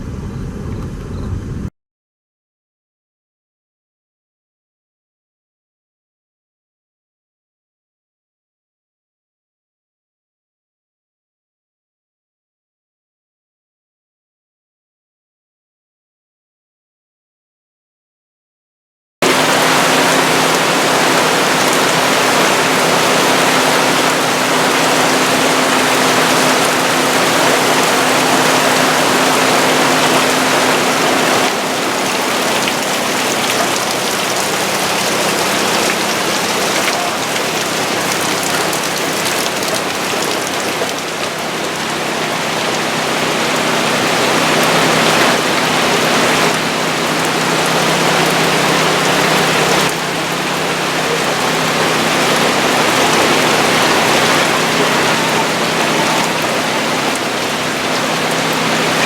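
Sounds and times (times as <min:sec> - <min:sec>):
rushing water: 0:19.2 - 0:59.0.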